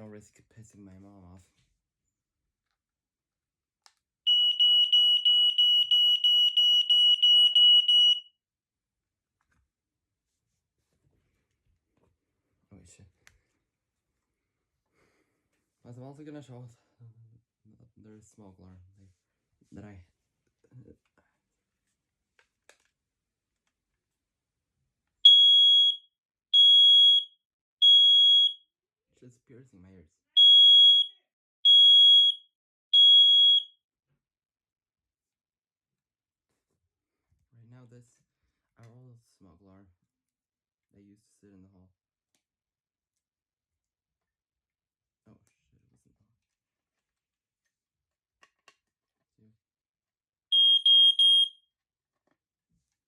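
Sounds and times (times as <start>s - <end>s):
smoke alarm pulsing tone: 4.3s - 8.3s, 25.3s - 26.0s, 26.6s - 28.6s, 30.4s - 32.4s, 33.0s - 33.7s, 50.5s - 51.6s.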